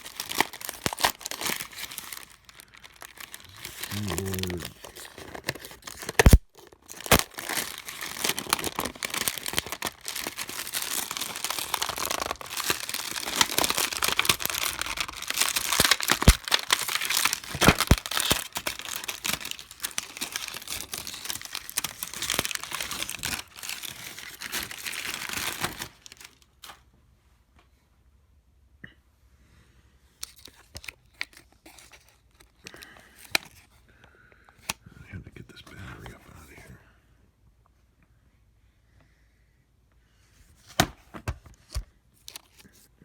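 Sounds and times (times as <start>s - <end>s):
laptop parts crinkling and tearing: 0.0s - 26.8s, 30.2s - 33.7s, 40.6s - 42.8s.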